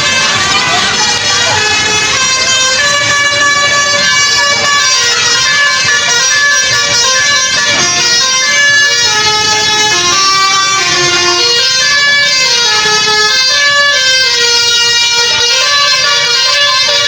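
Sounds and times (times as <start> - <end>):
bus musical horn playing tune: 0.0 - 17.0.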